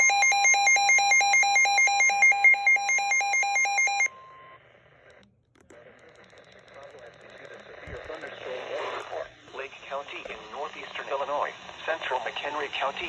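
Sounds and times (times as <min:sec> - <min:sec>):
electronic two-pitch alarm: 0:00.0 - 0:04.1.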